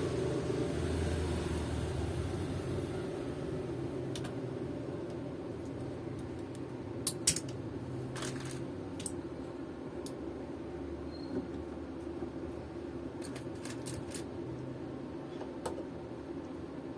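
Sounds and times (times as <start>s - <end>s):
hand tools clicking and tapping: 6.2s - 7.6s.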